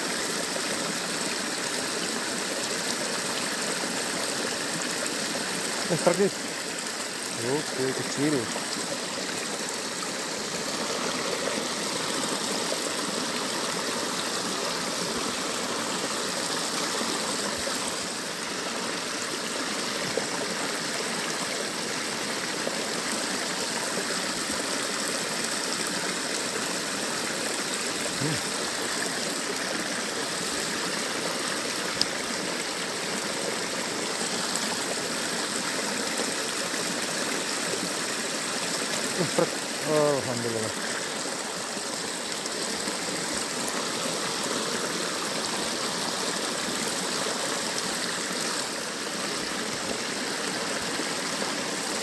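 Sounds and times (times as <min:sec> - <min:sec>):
stream flowing over rocks: 0:00.0 - 0:52.0.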